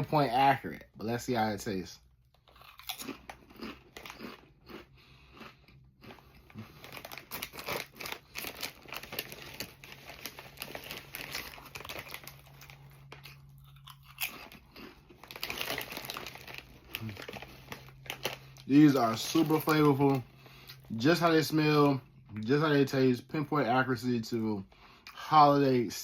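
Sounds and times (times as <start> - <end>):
chewing potato chips: 2.3 - 22.9.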